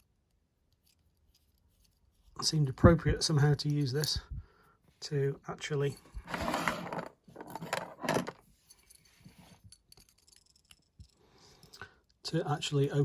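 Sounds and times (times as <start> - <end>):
metal clinking and scraping: 5.8 - 11.8.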